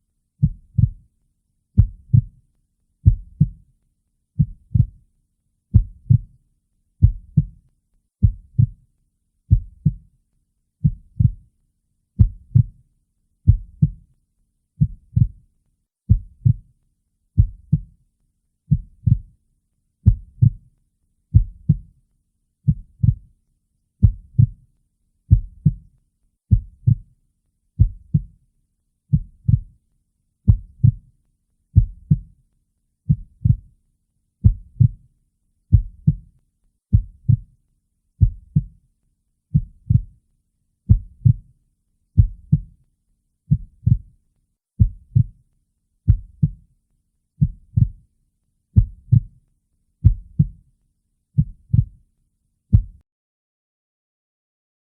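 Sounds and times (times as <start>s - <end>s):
slow heartbeat: 0.4s - 1.1s, 1.8s - 2.4s, 3.0s - 3.7s, 4.4s - 5.0s, 5.7s - 6.4s, 7.0s - 7.6s, 8.2s - 8.8s, 9.5s - 10.1s, 10.8s - 11.5s, 12.2s - 12.8s, 13.5s - 14.0s, 14.8s - 15.4s, 16.1s - 16.7s, 17.4s - 17.9s, 18.7s - 19.3s, 20.0s - 20.7s, 21.3s - 21.9s, 22.7s - 23.3s, 24.0s - 24.6s, 25.3s - 25.9s, 26.5s - 27.1s, 27.8s - 28.3s, 29.1s - 29.7s, 30.5s - 31.1s, 31.8s - 32.3s, 33.1s - 33.7s, 34.4s - 35.0s, 35.7s - 36.3s, 36.9s - 37.5s, 38.2s - 38.8s, 39.5s - 40.2s, 40.9s - 41.5s, 42.2s - 42.7s, 43.5s - 44.1s, 44.8s - 45.4s, 46.1s - 46.6s, 47.4s - 48.1s, 48.8s - 49.4s, 50.0s - 50.6s, 51.4s - 52.0s, 52.7s - 53.0s.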